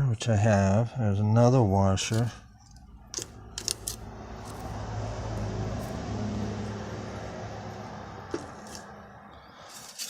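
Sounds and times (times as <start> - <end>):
vehicle passing by: 2.6 - 9.7.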